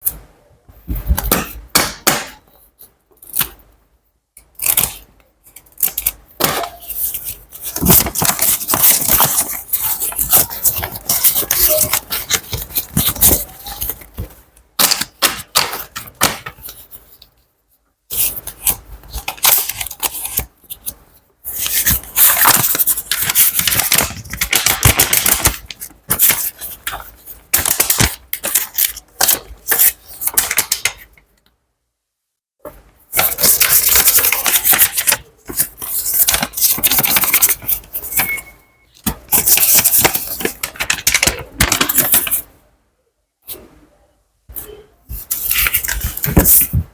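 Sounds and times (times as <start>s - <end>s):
money rustling and crackling: 4.6s - 17.3s, 18.1s - 31.0s, 33.1s - 38.4s, 39.1s - 42.5s, 45.1s - 46.9s.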